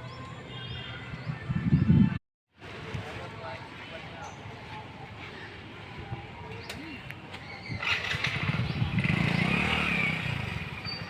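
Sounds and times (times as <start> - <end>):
vehicle engine passing by: 7.7 - 11.0.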